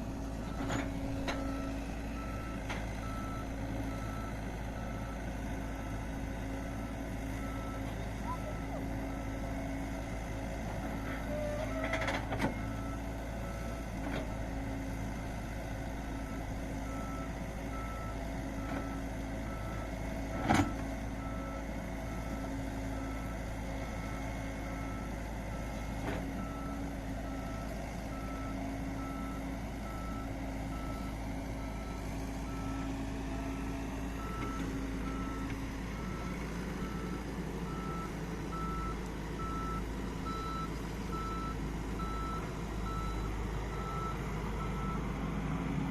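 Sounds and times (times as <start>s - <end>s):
heavy machine engine running: 0.0s - 45.9s
reversing alarm beeps: 0.4s - 5.2s, 12.6s - 14.4s, 16.1s - 19.9s, 26.4s - 45.0s.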